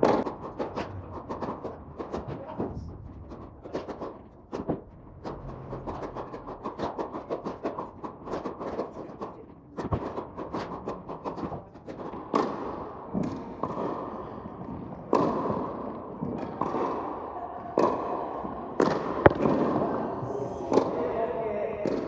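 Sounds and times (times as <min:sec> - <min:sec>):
tennis balls struck with rackets: 0:11.9 - 0:17.1, 0:18.8 - 0:19.9.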